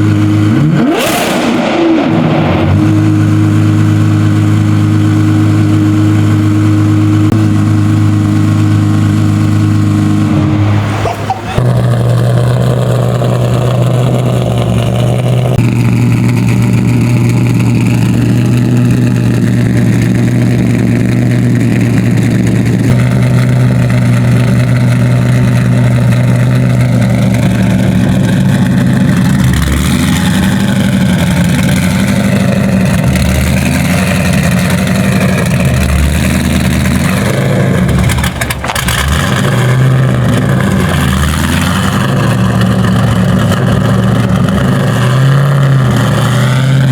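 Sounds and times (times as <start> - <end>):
car engine idling: 0.0 - 46.9.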